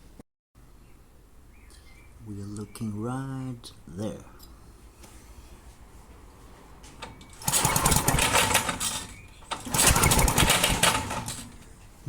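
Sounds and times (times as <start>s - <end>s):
lawn mower recoil starter pulls: 7.0s - 11.7s.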